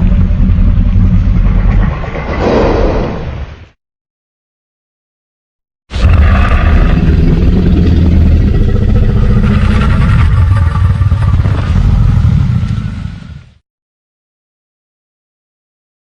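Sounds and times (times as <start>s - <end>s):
deep creature growl: 5.9s - 13.6s.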